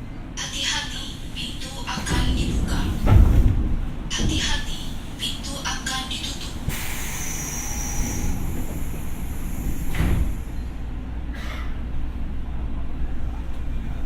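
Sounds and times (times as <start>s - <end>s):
train low rumble: 0.0s - 14.0s
train hiss with high whine: 6.7s - 10.7s.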